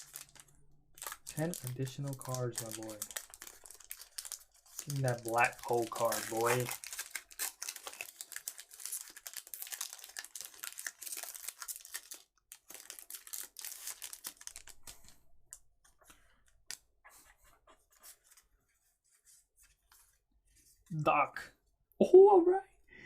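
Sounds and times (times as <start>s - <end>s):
foil wrapper tearing and crinkling: 0.0s - 15.2s
cards handled with clicks and rustles: 0.0s - 20.8s.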